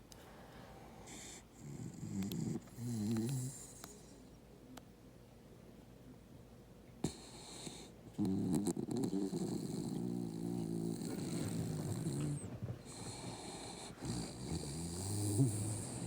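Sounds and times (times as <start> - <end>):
dog snoring: 1.0 - 4.2, 7.0 - 16.0.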